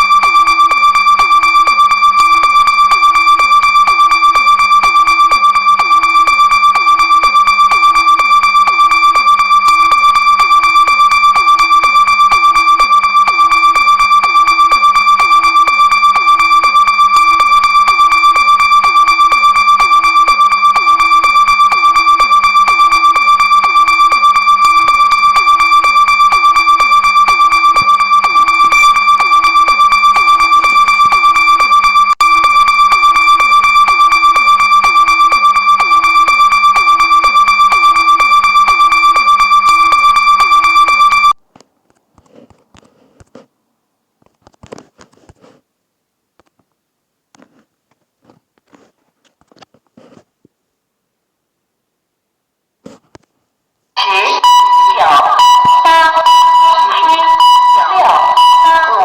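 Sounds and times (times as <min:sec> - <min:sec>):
high-pitched alert tone: 0:00.0 - 0:39.2, 0:54.0 - 0:59.0
low pulsing tone: 0:00.0 - 0:41.3.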